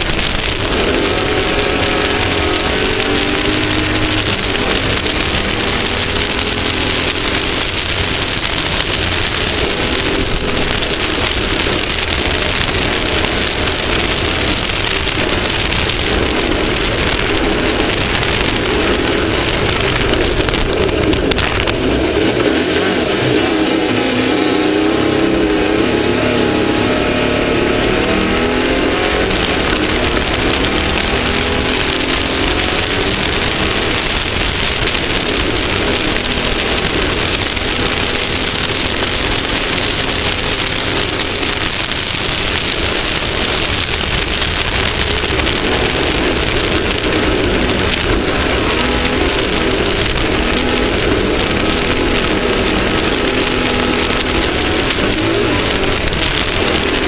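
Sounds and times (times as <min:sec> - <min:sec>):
rushing wind and terrain noise: 0:00.0 - 0:57.0
vehicle engine drone: 0:00.0 - 0:57.0.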